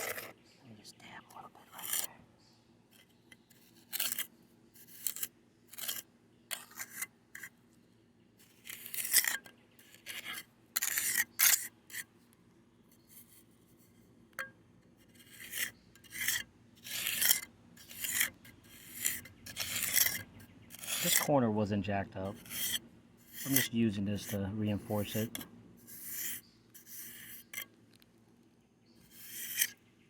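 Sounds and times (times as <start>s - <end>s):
tool scraping wet concrete: 0.0s - 0.4s, 2.9s - 7.6s, 8.4s - 12.1s, 15.0s - 21.6s, 22.2s - 28.0s, 29.0s - 29.8s.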